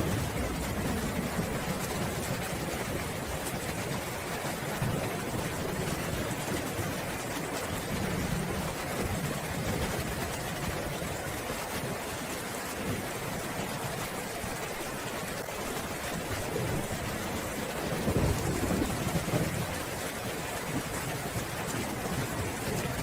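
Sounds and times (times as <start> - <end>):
thunder rumbling: 0.0 - 7.2, 16.3 - 23.0
steady rain: 0.0 - 23.0.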